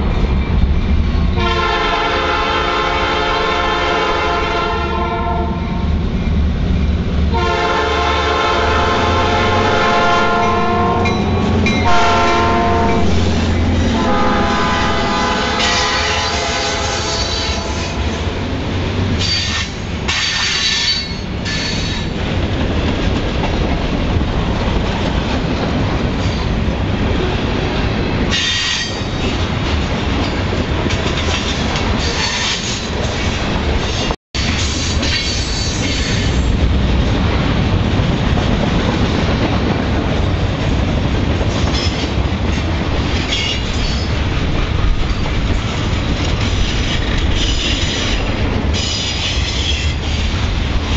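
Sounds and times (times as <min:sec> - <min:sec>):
freight train rumbling past: 0:00.0 - 0:50.9
train horn: 0:01.4 - 0:05.9, 0:07.3 - 0:18.3
train wheels squealing: 0:19.2 - 0:22.1, 0:28.0 - 0:29.3, 0:33.8 - 0:36.4.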